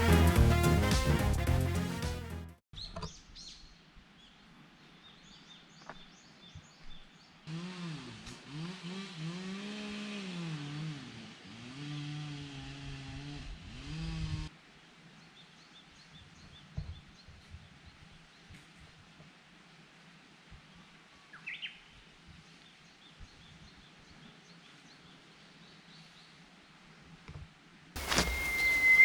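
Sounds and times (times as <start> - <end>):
motor engine revving: 7.5 - 14.4
small birds chirping: 28.0 - 29.0.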